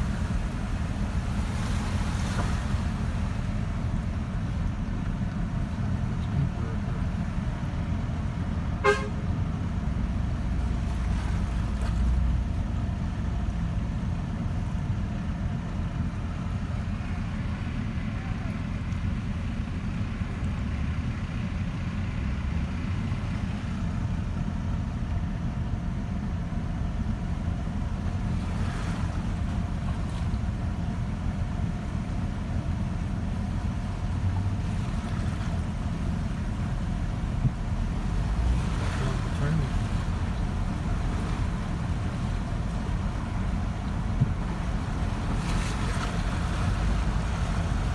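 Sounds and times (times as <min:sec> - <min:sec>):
vehicle driving through water: 0:00.0 - 0:47.9
water washing: 0:27.2 - 0:47.9.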